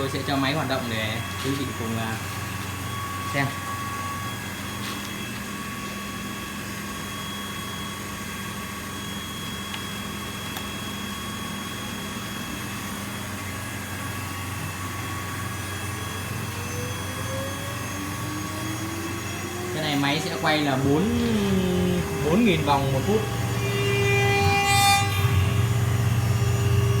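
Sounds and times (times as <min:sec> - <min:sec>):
cnc router humming and whining: 0:00.0 - 0:27.0
faint rising tones: 0:19.2 - 0:23.6.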